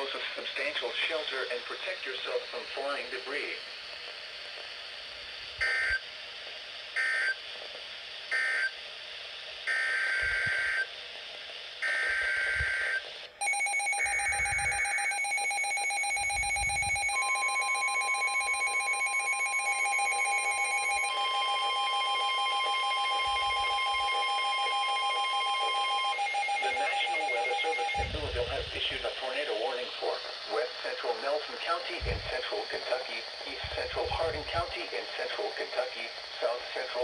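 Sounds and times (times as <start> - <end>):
two-tone data bursts: 11.9 - 29.0.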